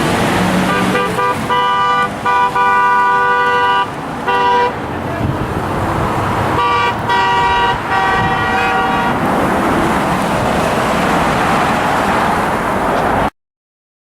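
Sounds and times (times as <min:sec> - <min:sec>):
freeway traffic noise: 0:00.0 - 0:13.3
vehicle horn long honk: 0:00.6 - 0:04.8, 0:06.6 - 0:09.2.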